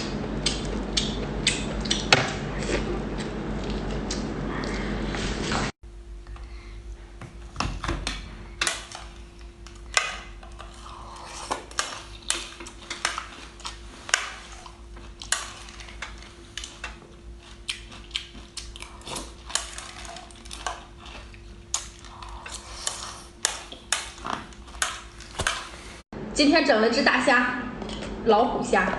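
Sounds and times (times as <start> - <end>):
faint hum: 0.0 - 28.9
crunchy food being eaten: 14.5 - 24.7.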